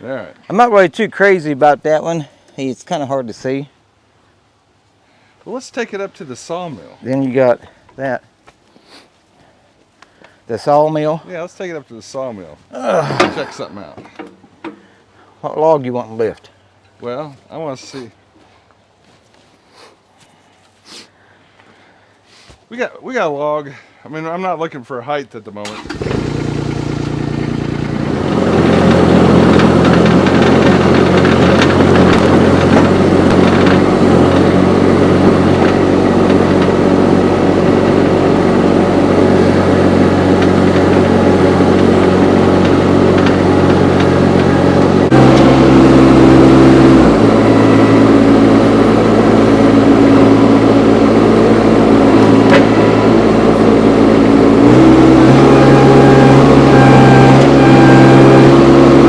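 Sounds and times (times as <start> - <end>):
diesel loader engine running: 25.7 - 59.0.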